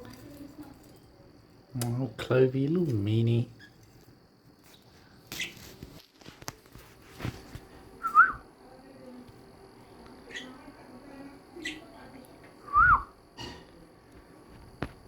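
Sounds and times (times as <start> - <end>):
budgerigars chirping: 10.3 - 10.6, 11.6 - 11.8.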